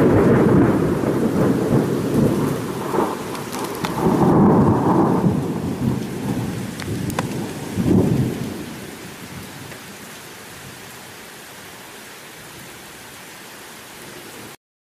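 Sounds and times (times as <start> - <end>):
thunder crackles: 0.0 - 10.0
thunder rumbling: 0.0 - 10.1
steady rain: 0.0 - 14.6.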